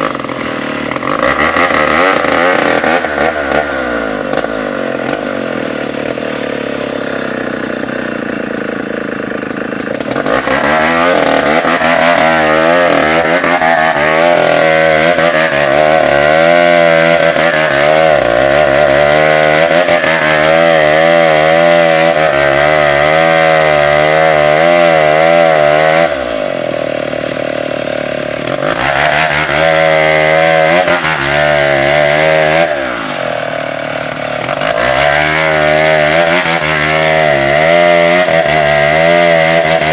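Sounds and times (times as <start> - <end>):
chainsaw cutting wood: 0.0 - 39.9
chainsaw revving and idling: 0.0 - 39.9.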